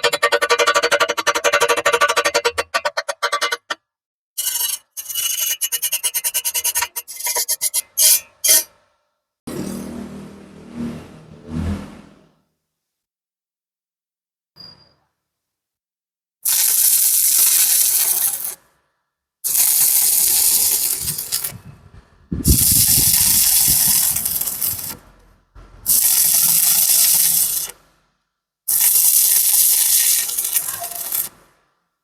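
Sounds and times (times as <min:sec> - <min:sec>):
welding arc crackling and hissing: 0:16.4 - 0:18.6, 0:19.5 - 0:21.6, 0:22.4 - 0:25.0, 0:25.8 - 0:27.8, 0:28.7 - 0:31.4.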